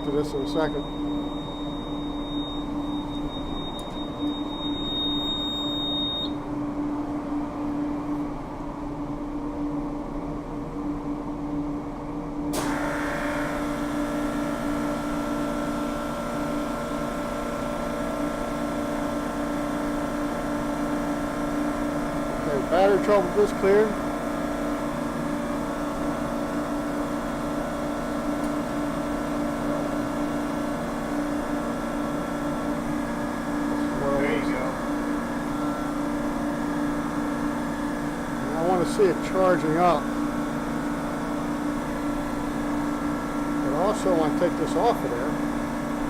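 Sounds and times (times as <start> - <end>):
high steady whine: 0.0 - 8.0, 12.5 - 46.0
mechanical hum: 0.0 - 46.0.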